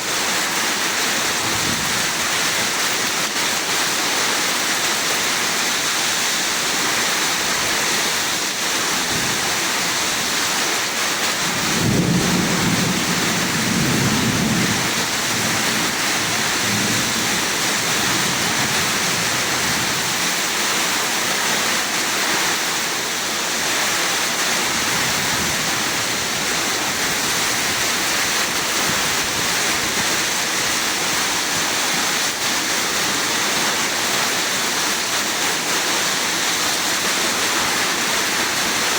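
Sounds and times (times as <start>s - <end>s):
heavy rain pouring: 0.0s - 38.9s
thunder rumbling: 11.4s - 20.1s.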